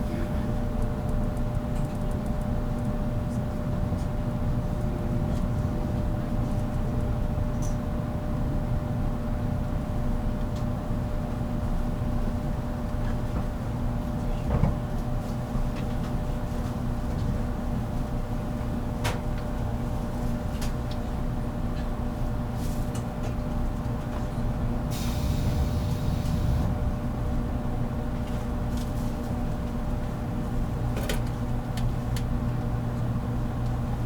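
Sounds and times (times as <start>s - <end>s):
train motor hum: 24.6s - 29.8s
short hiss: 24.9s - 26.6s.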